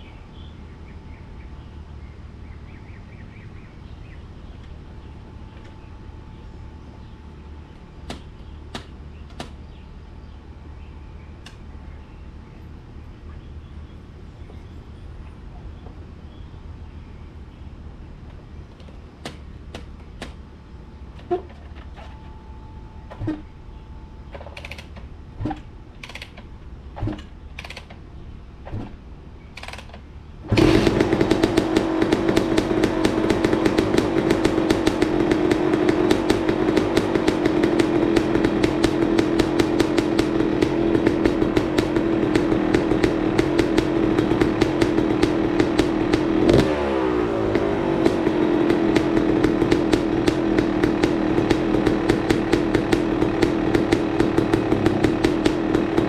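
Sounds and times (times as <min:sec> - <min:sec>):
engine starting clunks: 0:24.3 - 0:28.0, 0:29.6 - 0:35.0
dirt bike engine idling: 0:29.2 - 0:56.0.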